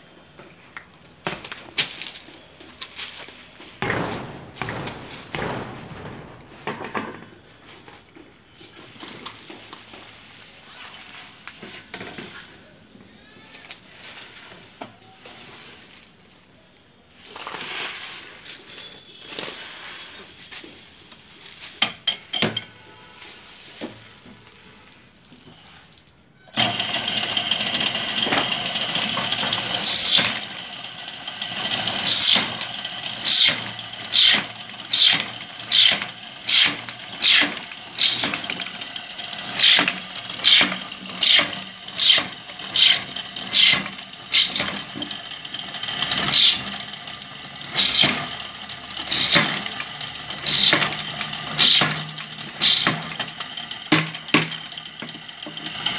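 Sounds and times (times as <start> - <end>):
drill cutting into plastic pipe: 29.8 - 30.5, 31.9 - 38.6, 39.4 - 44.9, 46.1 - 46.8, 47.7 - 48.3, 49.0 - 49.7, 50.4 - 53.3.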